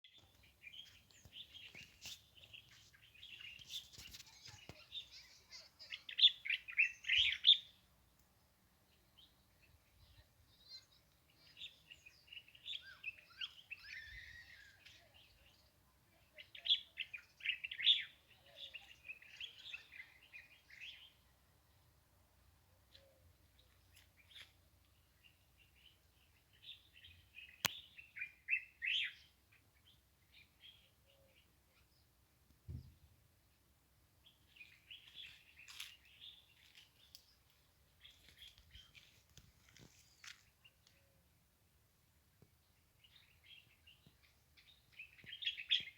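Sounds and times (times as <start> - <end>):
small birds chirping: 0.0 - 45.9.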